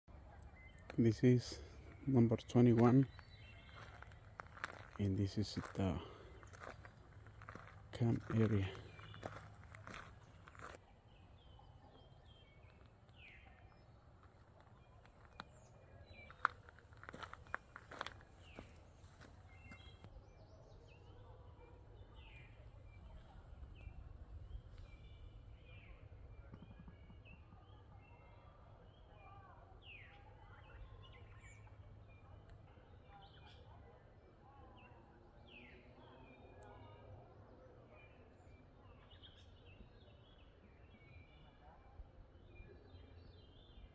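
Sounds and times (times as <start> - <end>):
birds chirping faintly: 0.1 - 34.0.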